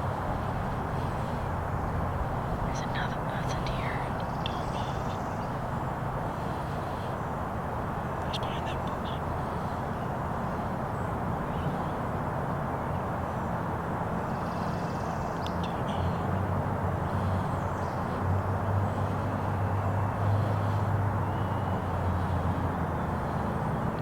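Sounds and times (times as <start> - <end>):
steady rushing noise: 0.0 - 24.0
faint bird chirps: 17.2 - 22.4.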